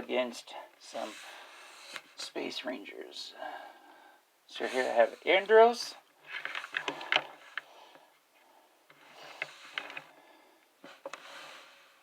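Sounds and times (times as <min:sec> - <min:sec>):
rustling: 0:04.7 - 0:10.2.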